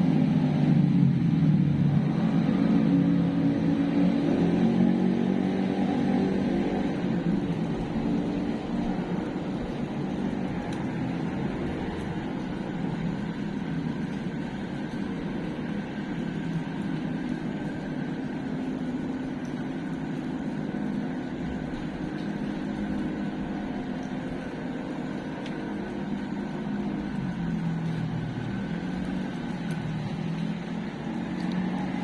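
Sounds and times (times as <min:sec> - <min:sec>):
low droning hum: 0:06.4 - 0:32.0.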